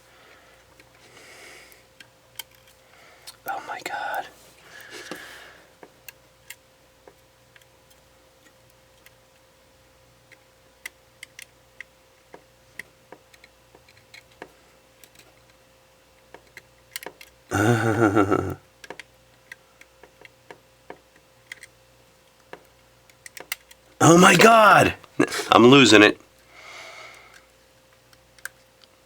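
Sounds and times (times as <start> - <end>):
person groaning in frustration: 17.5 - 18.6, 24.0 - 26.1.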